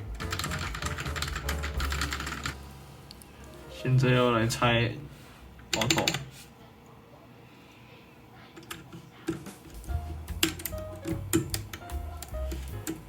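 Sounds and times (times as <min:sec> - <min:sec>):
background music with bass line: 0:09.8 - 0:13.0.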